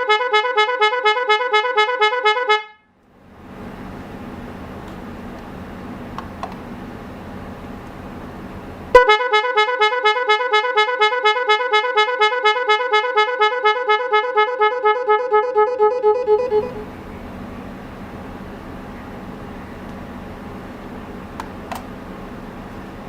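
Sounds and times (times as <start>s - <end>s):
car horn two-tone warble: 0.0s - 2.9s, 9.0s - 17.0s.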